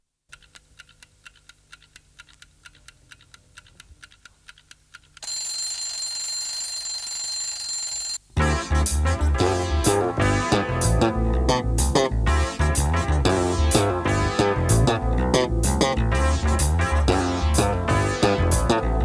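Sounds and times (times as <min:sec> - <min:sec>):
alarm clock ringing: 0:05.2 - 0:08.2
music: 0:08.4 - 0:19.0
clock ticking: 0:08.8 - 0:19.0.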